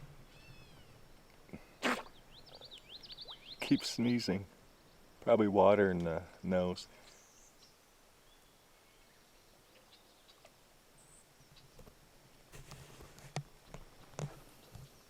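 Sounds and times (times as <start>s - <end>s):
beaver sneezing: 1.6s - 2.2s
short rush of noise: 1.8s - 2.2s.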